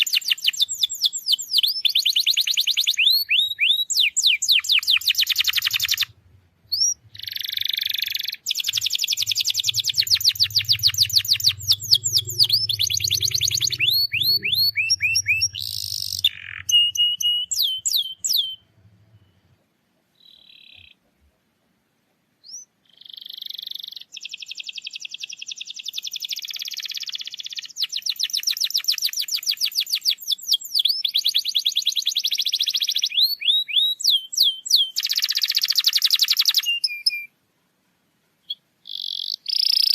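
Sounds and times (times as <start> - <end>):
canary singing trills: 0.0 - 21.1, 22.4 - 37.3, 38.4 - 39.9.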